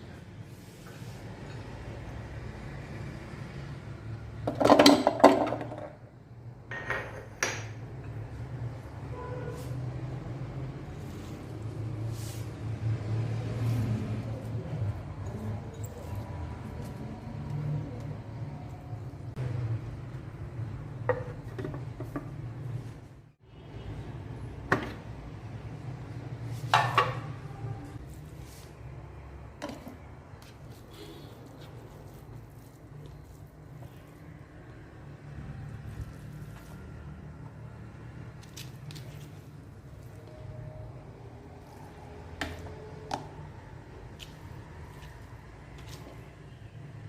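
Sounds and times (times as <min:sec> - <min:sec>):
kitchenware clattering: 0:04.4 - 0:08.2.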